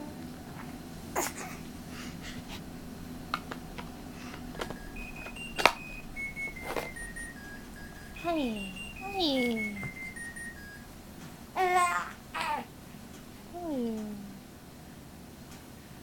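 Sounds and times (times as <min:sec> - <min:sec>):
electronic beep tones: 0:04.4 - 0:11.0.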